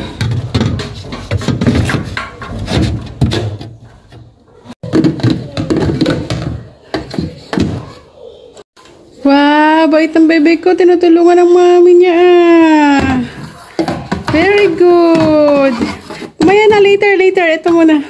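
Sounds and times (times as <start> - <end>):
hard objects knocking and clattering: 0.0 - 8.0, 12.9 - 18.0.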